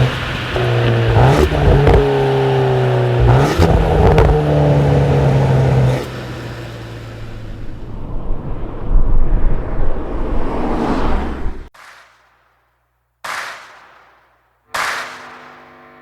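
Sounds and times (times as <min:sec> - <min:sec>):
car engine revving: 0:00.0 - 0:11.7
exhaust cracks: 0:00.0 - 0:11.7.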